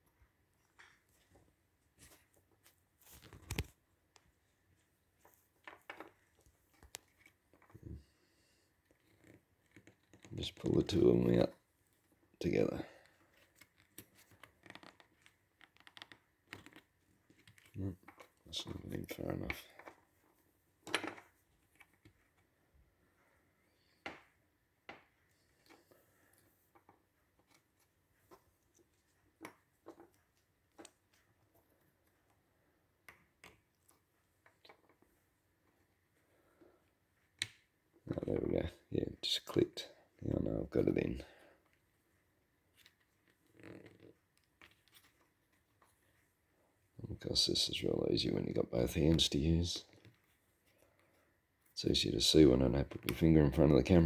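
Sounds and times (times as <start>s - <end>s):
faint plastic clicks and taps: 0.0s - 8.1s, 8.8s - 12.2s, 23.2s - 38.8s.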